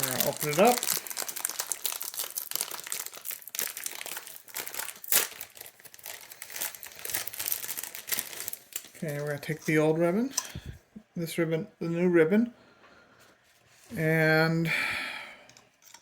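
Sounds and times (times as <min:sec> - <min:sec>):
packaging crinkling and rustling: 0:00.0 - 0:10.3.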